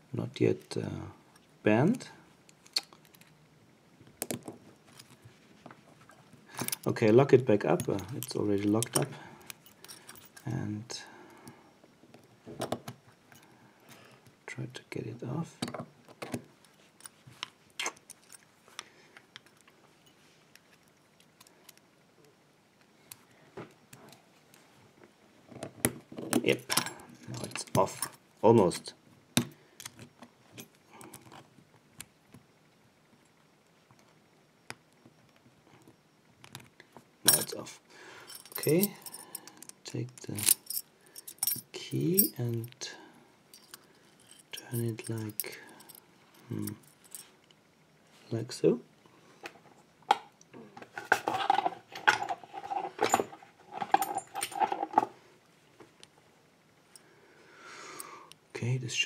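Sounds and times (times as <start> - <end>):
metal lock parts clinking: 6.5 - 10.6, 17.8 - 18.5, 26.1 - 31.4, 37.3 - 37.6, 38.3 - 42.9, 43.6 - 47.6, 50.9 - 55.1
screwdrivers clicking and scraping metal: 50.8 - 55.1.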